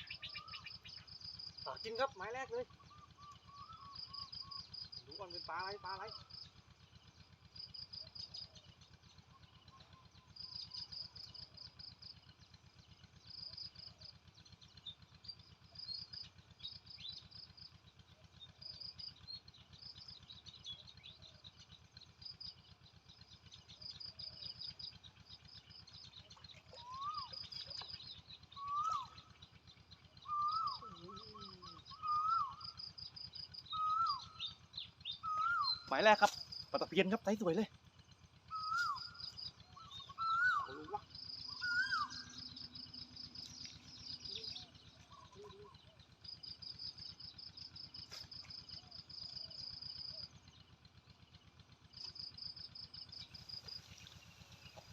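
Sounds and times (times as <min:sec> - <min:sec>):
bird whistling: 0:00.0 - 0:01.0, 0:26.8 - 0:27.9, 0:28.5 - 0:29.2, 0:30.2 - 0:32.8, 0:33.6 - 0:36.0, 0:38.5 - 0:42.7
rapid high bird chirping: 0:00.0 - 0:06.4, 0:25.8 - 0:37.7, 0:38.5 - 0:50.4.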